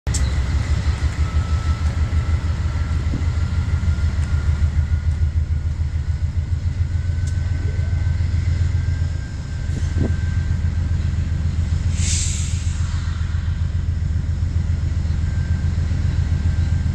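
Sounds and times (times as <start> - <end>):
locomotive engine rumbling: 0.1 - 16.9
short hiss: 11.9 - 13.2.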